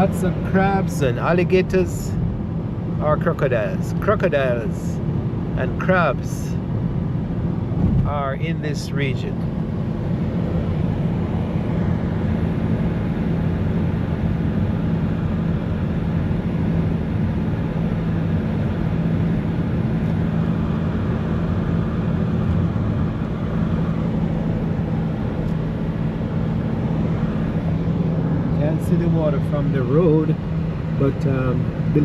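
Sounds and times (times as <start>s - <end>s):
car engine and road noise: 0.0s - 32.0s
low hum: 9.2s - 32.0s.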